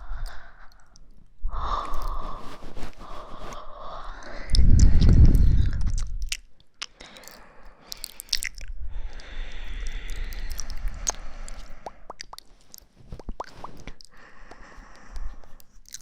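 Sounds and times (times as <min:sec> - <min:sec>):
rubbing and scratching on microphone: 0:01.9 - 0:03.6, 0:04.6 - 0:06.2, 0:12.6 - 0:14.0.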